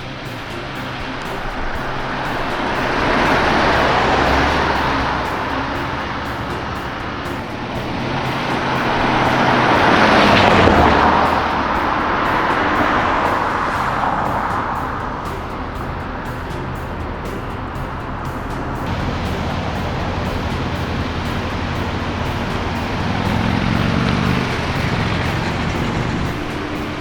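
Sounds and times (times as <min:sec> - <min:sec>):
background music: 0:00.0 - 0:27.0
cars passing by: 0:00.0 - 0:27.0.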